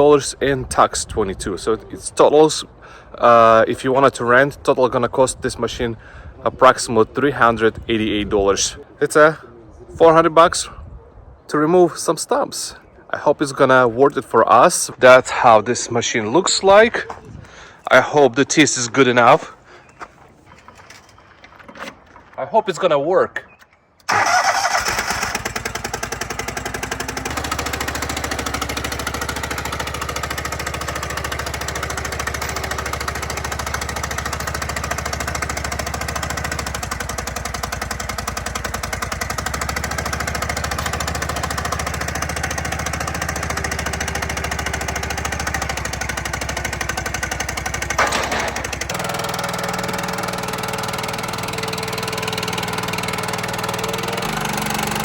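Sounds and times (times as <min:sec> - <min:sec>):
stump grinder engine chattering: 0:23.5 - 0:55.0.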